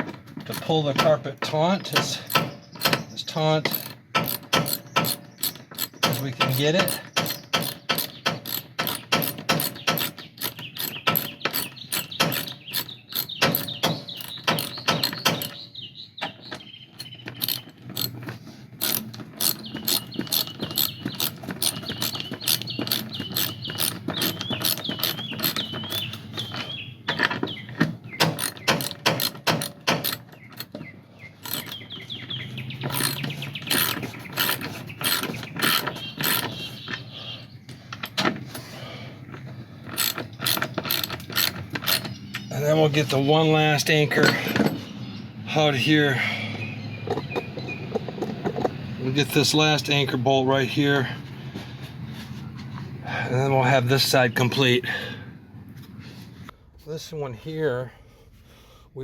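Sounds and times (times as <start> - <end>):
ratchet wrench clicking: 3.7 - 15.6, 17.0 - 26.7, 28.3 - 30.7, 31.4 - 31.8, 32.9 - 36.5, 39.8 - 42.2.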